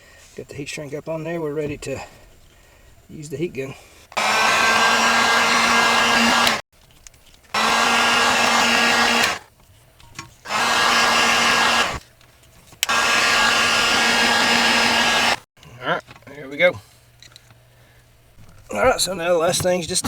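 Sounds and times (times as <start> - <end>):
heat gun blowing: 4.1 - 6.6, 7.5 - 9.5, 10.4 - 12.0, 12.8 - 15.5.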